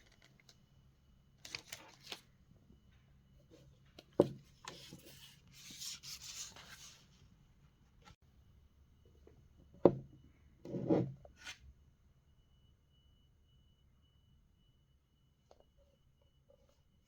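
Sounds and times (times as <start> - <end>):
cardboard and paper rustling: 1.5 - 2.2.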